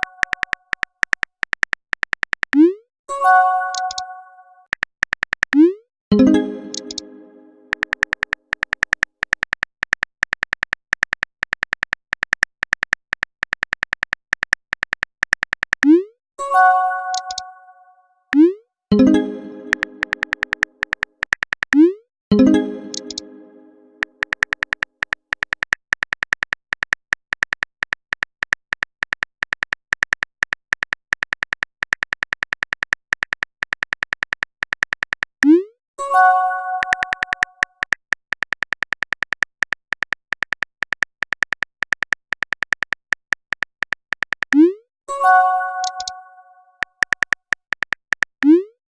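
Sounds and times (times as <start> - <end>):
phone keyboard taps: 24.0 - 35.3, 36.8 - 44.6.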